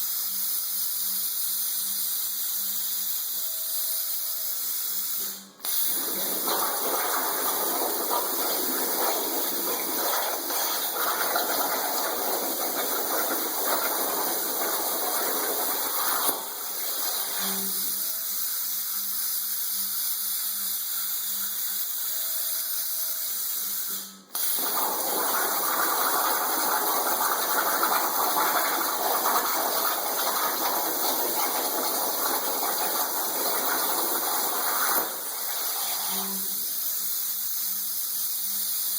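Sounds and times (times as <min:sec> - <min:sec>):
plasma torch cutting under water: 0:00.0 - 0:38.9.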